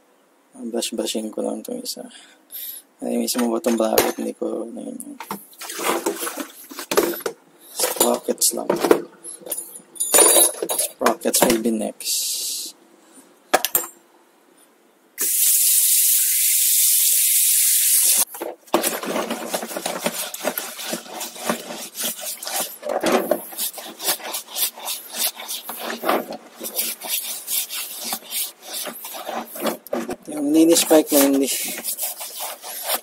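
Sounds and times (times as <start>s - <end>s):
brush scrubbing sprockets: 18.8s - 33.0s.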